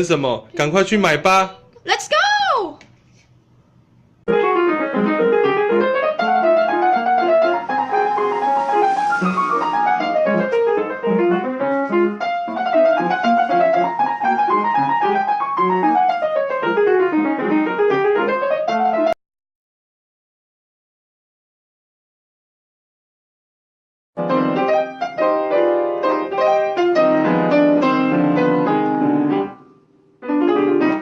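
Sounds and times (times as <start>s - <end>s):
piano runs and arpeggios: 4.3s - 19.2s, 24.2s - 31.0s.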